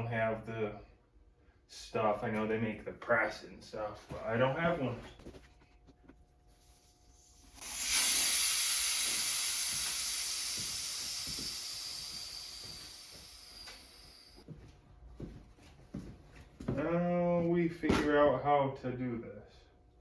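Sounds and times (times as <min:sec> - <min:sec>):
air hissing out of a tire: 0:06.6 - 0:14.4
faint whistle dropping in pitch: 0:07.7 - 0:14.4.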